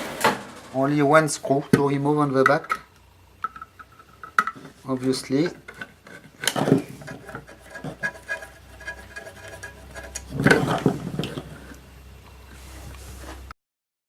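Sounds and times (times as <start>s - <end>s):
screwdriver scraping screw: 5.6s - 11.8s.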